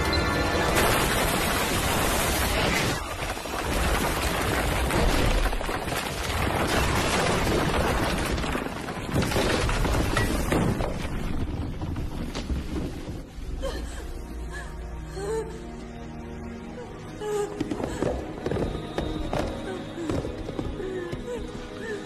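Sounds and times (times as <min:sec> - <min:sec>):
film music score: 0:00.0 - 0:05.5, 0:12.3 - 0:22.0.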